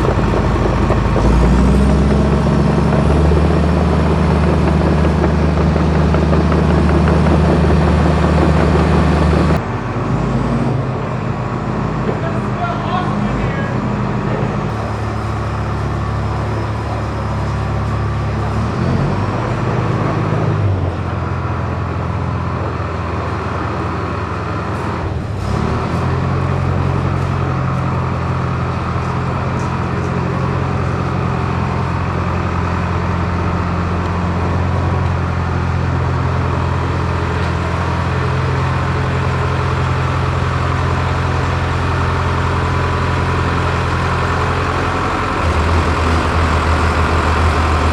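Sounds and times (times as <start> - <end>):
dozer diesel engine running: 0.0 - 47.9.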